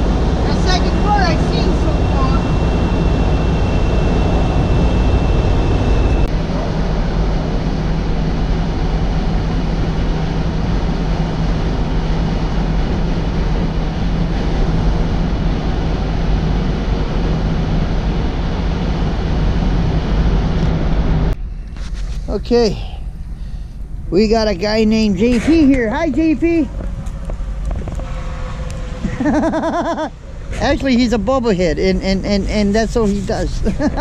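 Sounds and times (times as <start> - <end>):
truck diesel engine droning: 0.0 - 21.7, 22.3 - 34.0
constant rushing noise: 0.0 - 34.0
thin high tone: 0.4 - 6.3.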